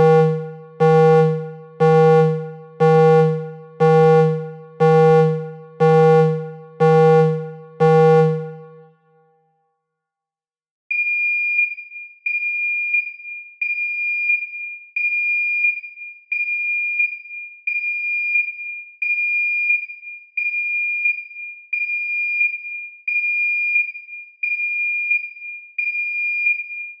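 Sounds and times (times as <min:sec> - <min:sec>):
electronic alarm beeping: 0:00.0 - 0:08.8.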